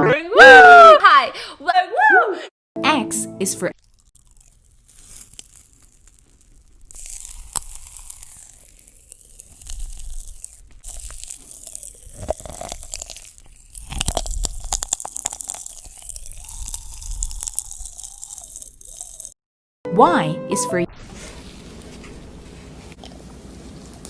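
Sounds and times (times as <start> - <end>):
chewing crisp food: 3.7 - 19.4, 21.7 - 24.0.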